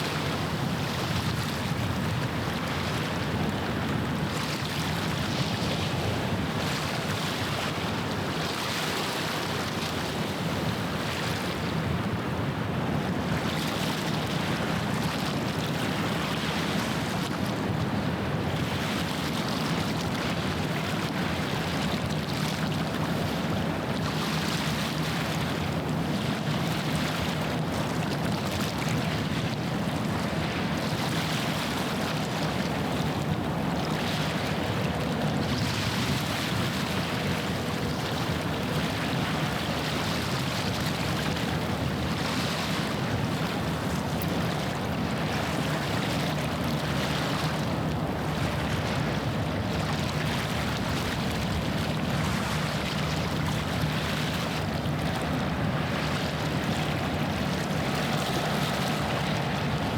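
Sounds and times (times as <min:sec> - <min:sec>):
waves washing against shore: 0:18.6 - 0:59.9.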